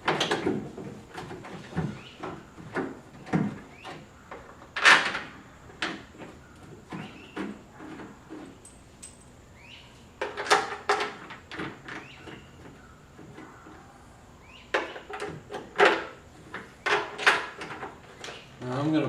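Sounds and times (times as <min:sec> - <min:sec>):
metallic clicks and knocks: 0:10.2 - 0:13.5.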